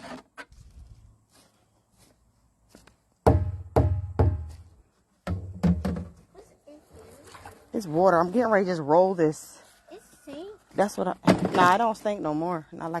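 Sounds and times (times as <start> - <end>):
hollow drum-like knocks: 3.2 - 4.6, 5.2 - 6.2.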